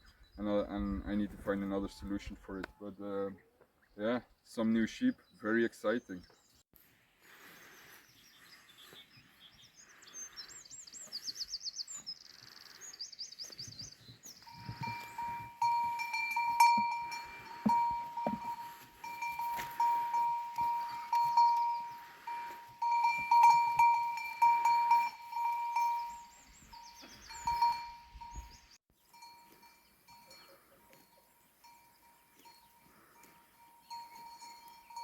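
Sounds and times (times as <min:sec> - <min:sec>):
birds chirping: 0:00.0 - 0:06.6, 0:07.2 - 0:35.0
livestock bell clanking: 0:14.4 - 0:35.0.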